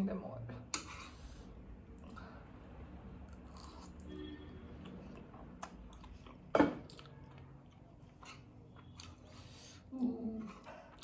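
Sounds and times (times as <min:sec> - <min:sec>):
faint chewing of noodles: 0:04.8 - 0:11.0.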